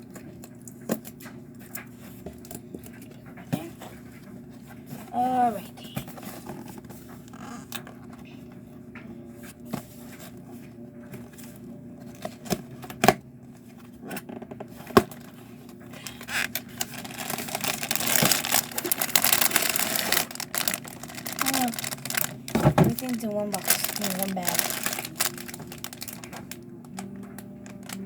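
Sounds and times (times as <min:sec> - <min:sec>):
steady low hum: 0:00.0 - 0:28.0
plastic bag crinkling: 0:15.9 - 0:28.0.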